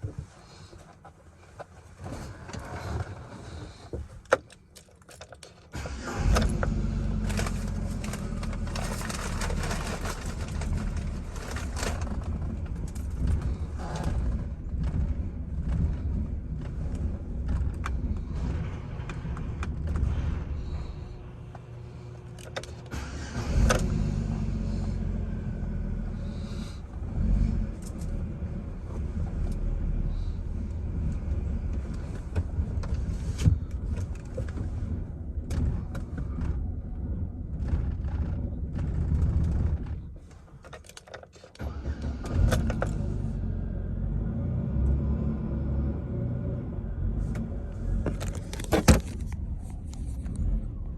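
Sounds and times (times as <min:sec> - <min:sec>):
truck engine idling roughly: 0:05.8 - 0:34.0.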